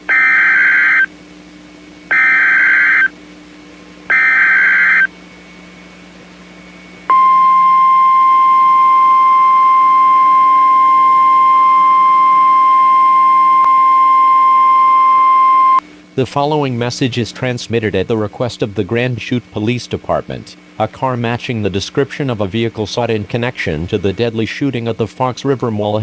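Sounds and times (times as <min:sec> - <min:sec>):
steady warning alarm tone: 0:00.0 - 0:01.2, 0:02.1 - 0:03.2, 0:04.1 - 0:05.2, 0:07.1 - 0:15.8
digital data tone bursts: 0:00.1 - 0:01.1, 0:02.1 - 0:03.1, 0:04.1 - 0:05.1.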